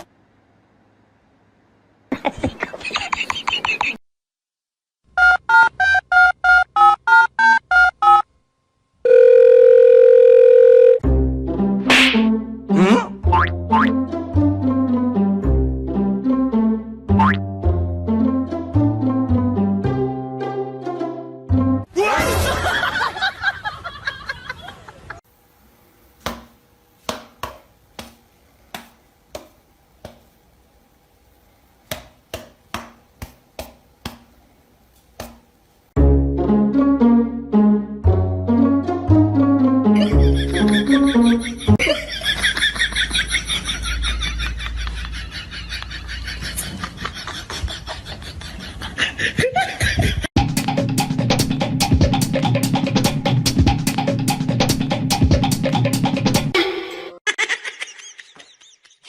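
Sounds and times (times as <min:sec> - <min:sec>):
long steady dial tone: 0:09.0 - 0:11.0.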